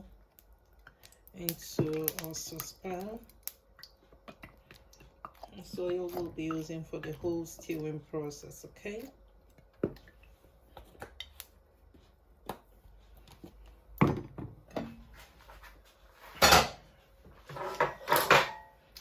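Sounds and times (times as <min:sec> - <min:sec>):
cookware clattering: 0:16.3 - 0:16.8, 0:17.5 - 0:18.7
cookware clicks and knocks: 0:17.5 - 0:18.7.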